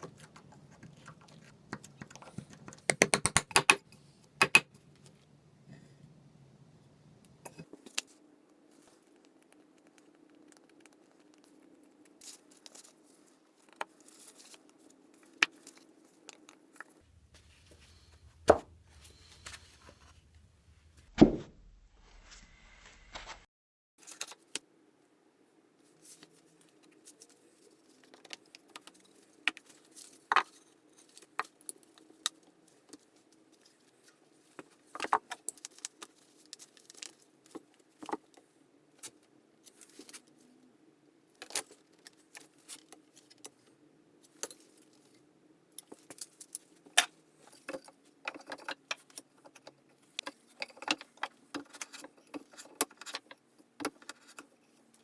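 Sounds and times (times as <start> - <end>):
faint steady hum: 0.0 - 21.0
hand tool clicks and taps: 1.7 - 3.8, 4.4 - 4.6.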